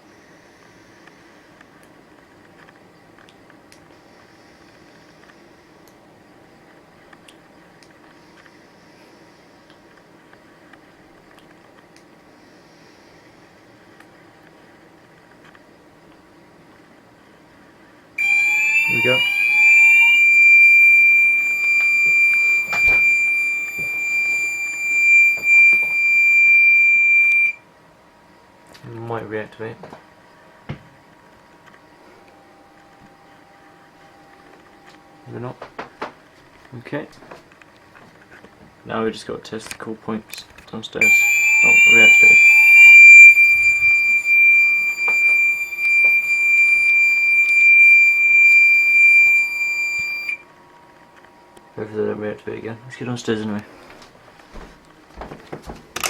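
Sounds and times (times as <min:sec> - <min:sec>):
fire alarm tone: 0:18.2 - 0:27.6, 0:41.0 - 0:50.4.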